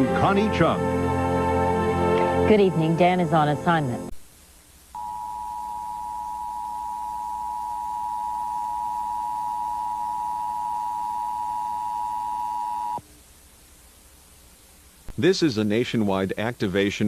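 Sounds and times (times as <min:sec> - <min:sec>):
two steady alert tones: 0:05.0 - 0:13.0.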